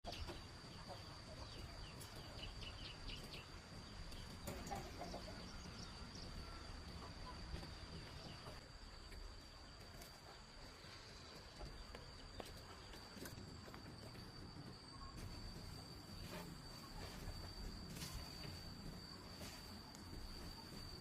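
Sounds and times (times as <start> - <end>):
small birds chirping: 0.0 - 13.2
chickens clucking: 0.1 - 8.7
steady high-pitched tone: 13.7 - 21.0.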